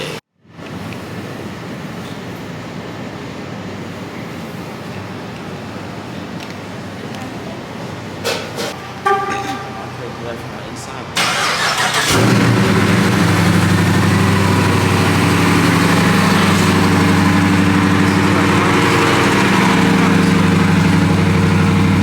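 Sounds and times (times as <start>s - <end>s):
car engine idling loudly: 11.2s - 22.0s.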